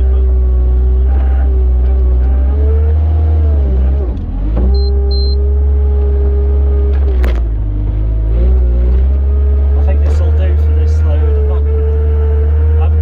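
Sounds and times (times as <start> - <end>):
tractor engine running: 0.0 - 13.0
short high beeps: 4.8 - 5.4.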